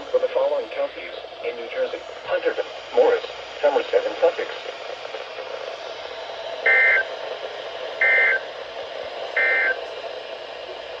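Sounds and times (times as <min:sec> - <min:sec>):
radio hiss: 0:00.0 - 0:11.0
two-tone warbling data bursts: 0:06.7 - 0:07.1.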